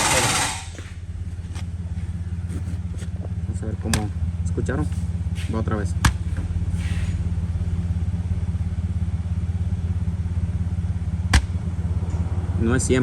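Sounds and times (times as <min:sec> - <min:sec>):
car engine idling: 0:00.0 - 0:13.0
sharp knock: 0:11.4 - 0:11.6.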